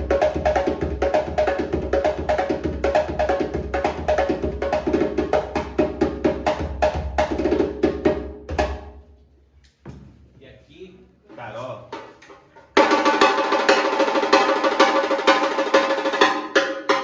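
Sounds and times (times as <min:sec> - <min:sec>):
djembe played with hands: 0:00.0 - 0:09.0, 0:12.8 - 0:17.0.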